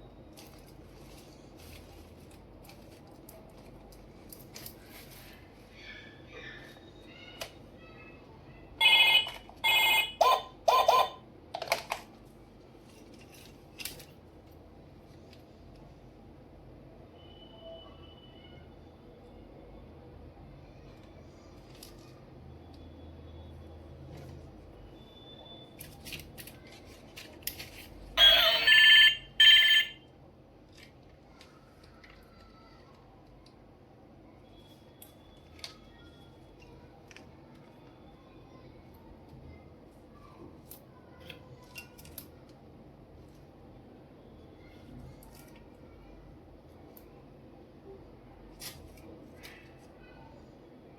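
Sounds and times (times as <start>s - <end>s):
toy phone ringing: 8.8s - 11.2s, 28.2s - 30.0s.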